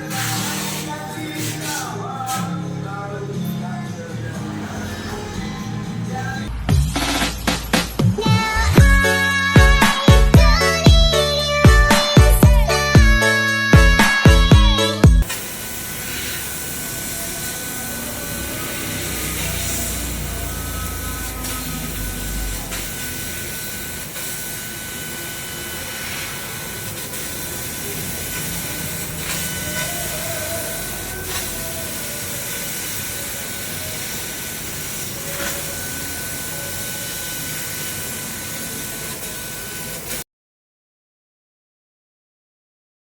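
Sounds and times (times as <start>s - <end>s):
hiss of laser cutter gas: 0.0s - 2.5s, 15.2s - 40.2s.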